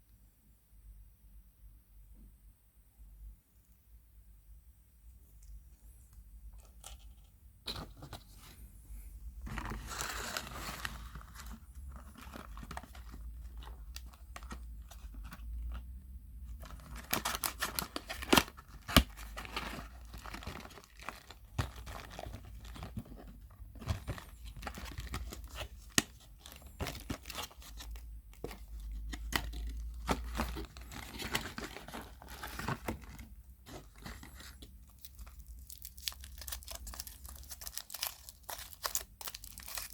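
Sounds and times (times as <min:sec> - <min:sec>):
wrapper crinkling and tearing: 0:09.5 - 0:39.9.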